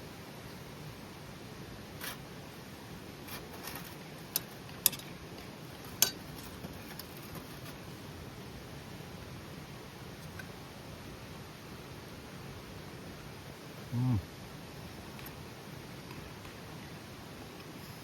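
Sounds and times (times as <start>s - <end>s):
faint steady hiss: 0.0s - 18.0s
soft rustle: 1.9s - 8.1s.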